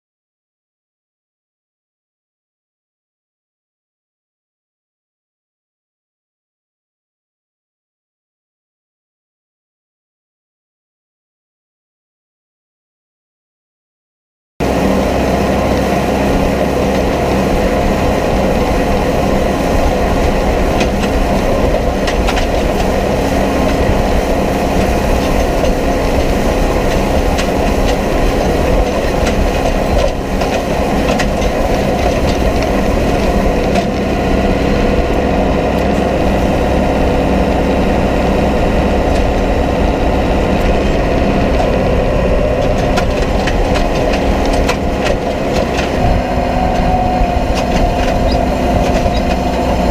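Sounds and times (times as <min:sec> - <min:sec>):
tractor engine running: 0:14.6 - 0:49.9
hay implement clattering: 0:14.8 - 0:49.9.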